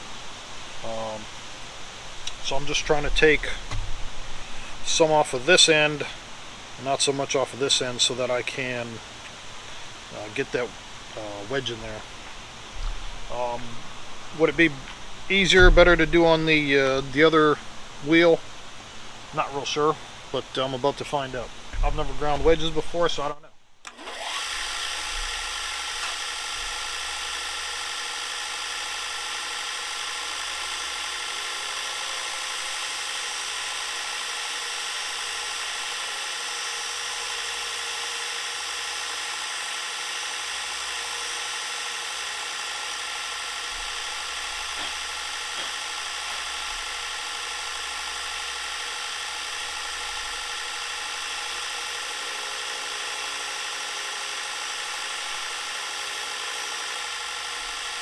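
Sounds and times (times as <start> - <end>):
bench grinder motor humming: 0.0 - 58.0
metal ground against grinder wheel: 2.1 - 58.0.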